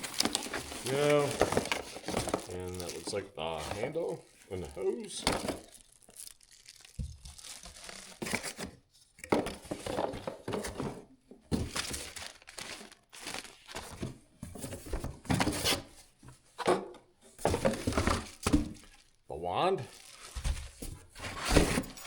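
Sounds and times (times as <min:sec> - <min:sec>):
plastic packaging crinkling and tearing: 0:00.0 - 0:08.7, 0:11.6 - 0:14.0, 0:17.6 - 0:19.2, 0:19.9 - 0:22.0.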